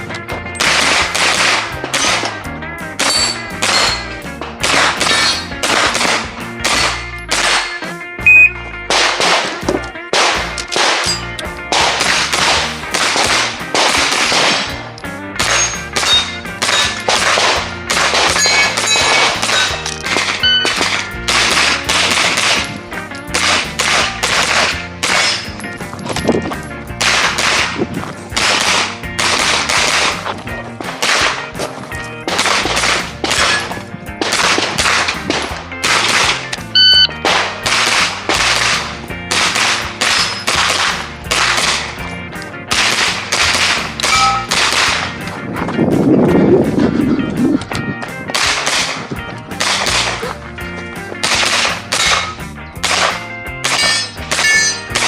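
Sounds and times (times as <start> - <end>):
carbine gunshots with echo: 0.6 - 8.0, 8.8 - 25.6, 27.0 - 31.6, 32.3 - 42.1, 42.7 - 45.2, 48.3 - 50.3, 51.2 - 55.0
metallic ringing: 44.1 - 44.5, 53.7 - 55.0.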